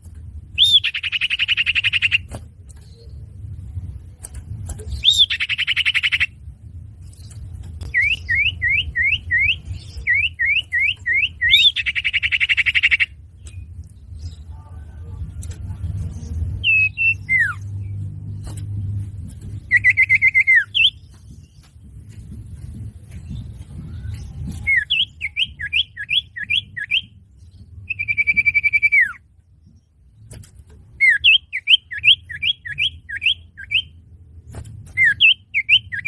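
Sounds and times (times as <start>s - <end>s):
low hum: 0.0s - 31.0s
bird calls with buzzy trills: 0.6s - 3.4s, 4.8s - 6.4s, 7.2s - 15.5s, 23.1s - 29.8s.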